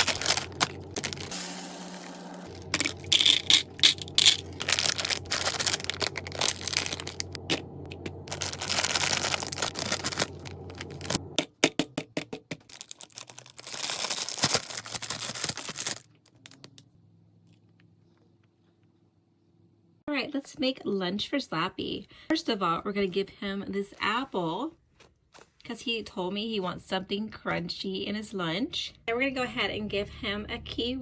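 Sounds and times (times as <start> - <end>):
plastic packaging crinkling: 0.0 - 11.4, 12.5 - 16.8.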